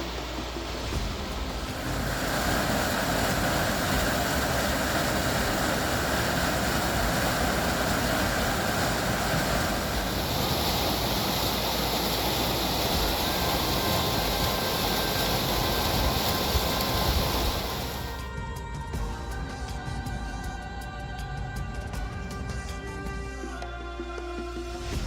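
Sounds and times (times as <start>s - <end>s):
waterfall roaring: 0.0s - 18.3s.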